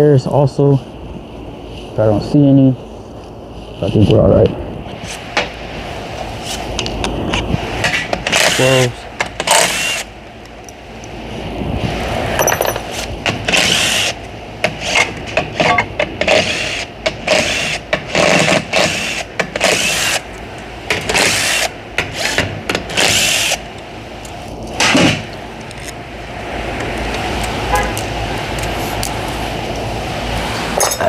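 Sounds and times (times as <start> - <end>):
power tool spinning bolts: 7.9 - 10.1, 20.9 - 23.6.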